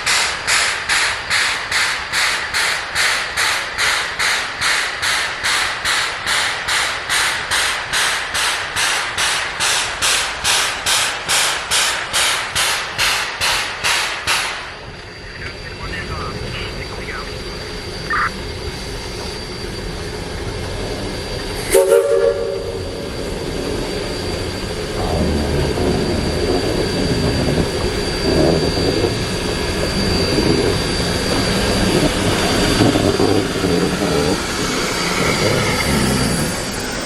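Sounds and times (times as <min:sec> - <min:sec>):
steam locomotive chuffing: 0:00.0 - 0:37.0
steam locomotive whistle: 0:21.6 - 0:23.0.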